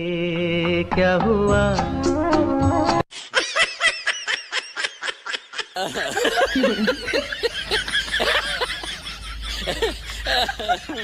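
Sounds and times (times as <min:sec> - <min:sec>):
snickering laughter: 0:03.3 - 0:11.0
overlapping voices laughing: 0:03.4 - 0:11.0.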